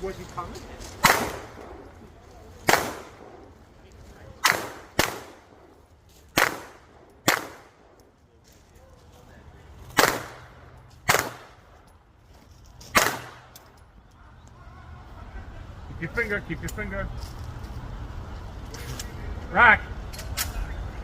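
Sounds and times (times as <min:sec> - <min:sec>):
pistol shots with echo: 0:01.0 - 0:01.9, 0:02.6 - 0:03.6, 0:04.4 - 0:05.8, 0:06.4 - 0:08.0, 0:10.0 - 0:11.6, 0:13.0 - 0:13.5.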